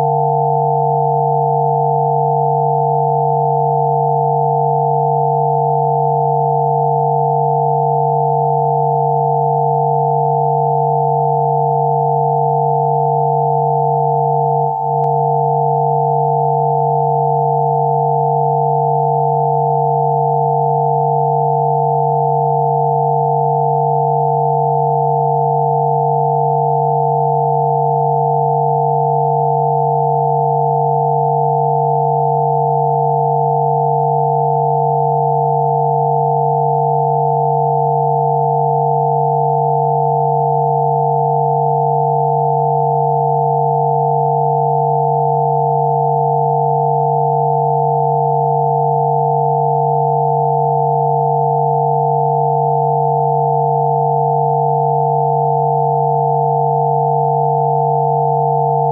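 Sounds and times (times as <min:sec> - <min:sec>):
low electronic hum: 0:00.0 - 0:00.3
high pure sine tones: 0:00.0 - 0:58.9.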